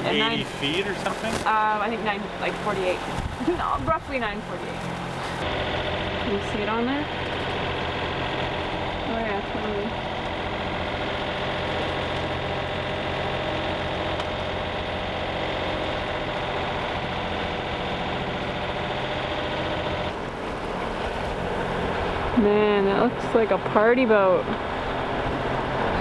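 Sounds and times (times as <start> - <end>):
diesel boat engine humming: 0.0 - 26.0.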